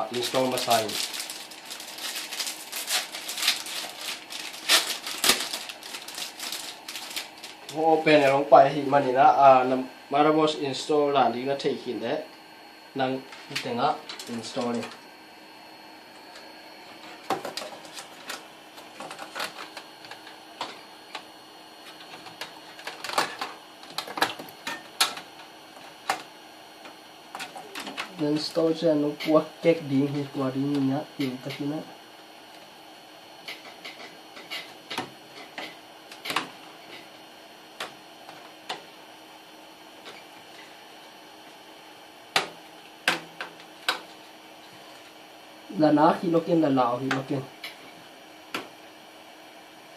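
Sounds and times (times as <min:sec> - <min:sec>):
clicks and light knocks of computer parts: 0:16.3 - 0:28.5, 0:33.4 - 0:37.1, 0:42.3 - 0:44.2.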